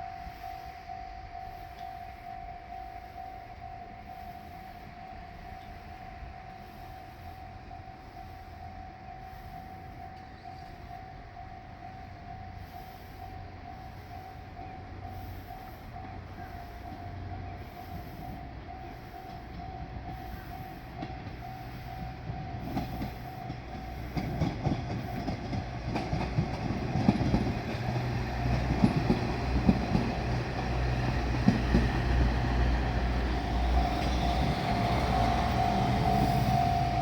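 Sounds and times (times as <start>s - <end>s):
diesel train engine rumble: 0.0s - 37.0s
level-crossing warning bell: 0.0s - 37.0s
wheels clacking over rail joints: 19.2s - 37.0s.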